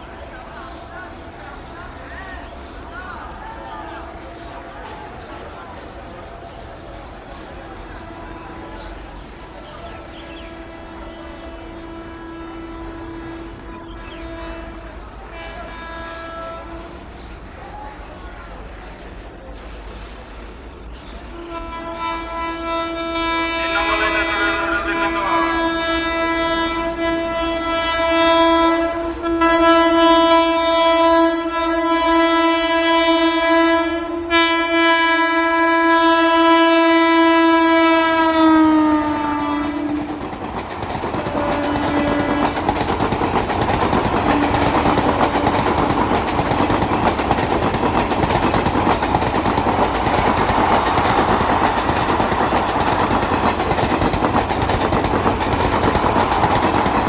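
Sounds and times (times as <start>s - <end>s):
wheels clacking on track: 0.0s - 22.0s, 39.4s - 57.0s
train coaches rumbling: 0.0s - 57.0s
locomotive horn honking: 7.8s - 9.2s, 9.8s - 17.2s, 21.3s - 48.1s.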